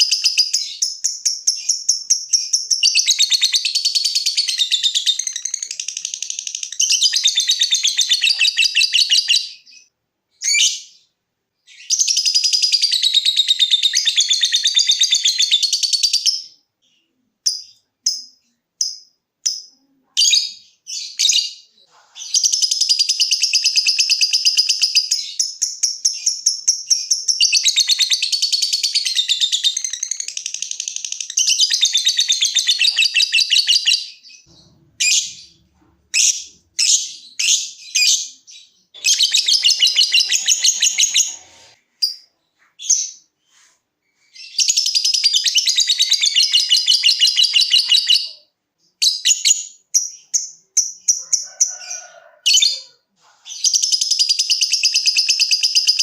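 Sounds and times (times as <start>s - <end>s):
bird chirps: 0.0s - 56.0s
bird chattering trills: 39.0s - 41.8s.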